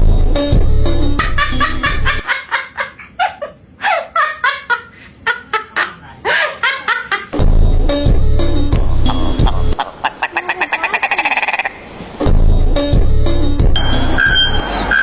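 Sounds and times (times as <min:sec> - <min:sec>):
music with heavy bass beat: 0:00.0 - 0:02.2, 0:07.4 - 0:09.8, 0:12.2 - 0:14.6
bird chattering calls: 0:09.8 - 0:11.8.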